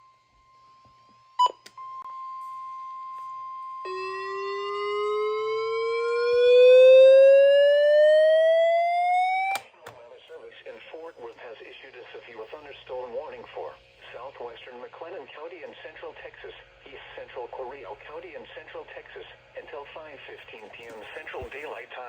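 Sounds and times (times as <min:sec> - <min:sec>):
warning alarm tone: 0:03.1 - 0:09.6
siren alarm rising in pitch: 0:03.8 - 0:09.7.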